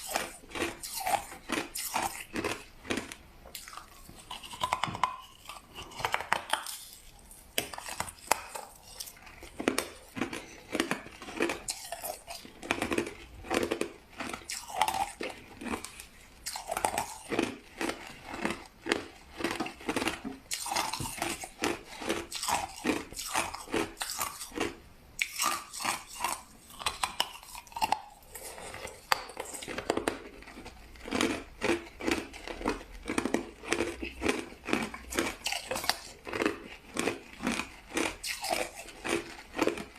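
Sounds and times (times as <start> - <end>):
ice crunching being chewed: 0.0 - 39.9.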